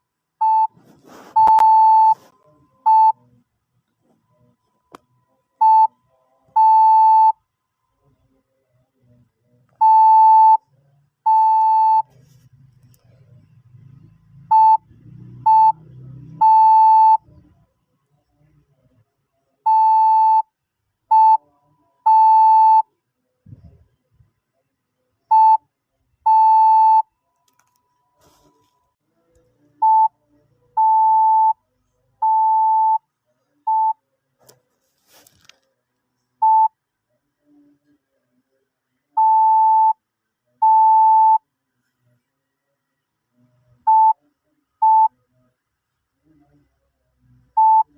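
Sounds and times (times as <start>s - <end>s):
morse code beeps: 0.4s - 2.2s, 15.5s - 15.8s, 16.4s - 17.2s.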